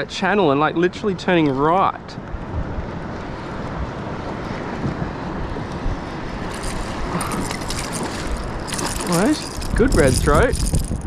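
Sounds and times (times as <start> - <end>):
wind rumble on microphone: 2.1 - 11.0
water washing around kayak: 6.0 - 11.0.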